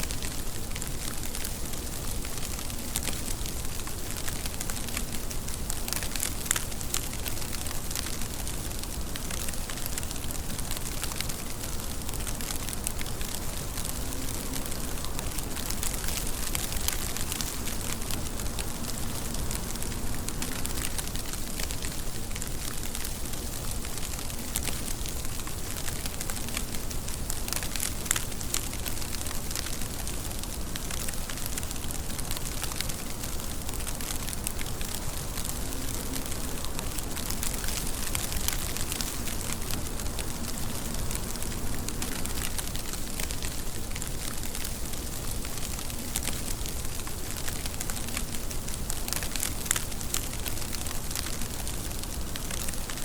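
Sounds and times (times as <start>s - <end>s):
raindrops ticking on surface: 0.0s - 53.0s
steady rain hiss: 0.0s - 53.0s.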